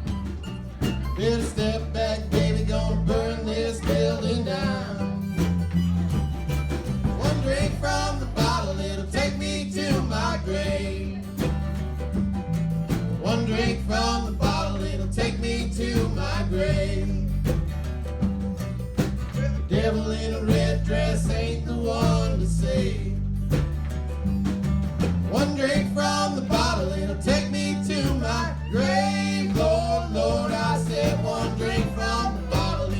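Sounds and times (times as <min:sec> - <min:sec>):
plucked guitar: 0:00.0 - 0:32.9
steady bass line: 0:00.0 - 0:32.9.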